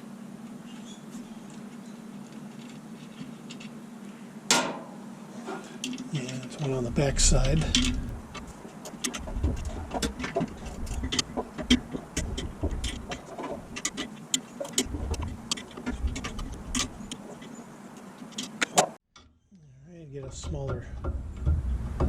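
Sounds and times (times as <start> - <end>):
dull metal knocks: 6.4 - 17.5, 20.2 - 22.0.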